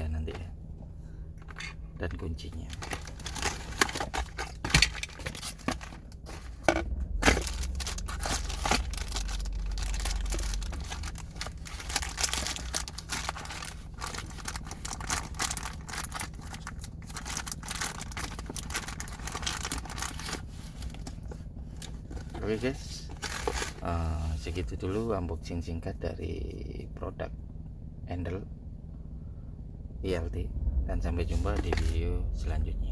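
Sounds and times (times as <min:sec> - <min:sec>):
hardware clicking and scraping: 0:01.4 - 0:02.0, 0:02.6 - 0:14.8
plastic wrapping crinkling: 0:02.7 - 0:06.2, 0:07.4 - 0:22.4, 0:23.1 - 0:23.8.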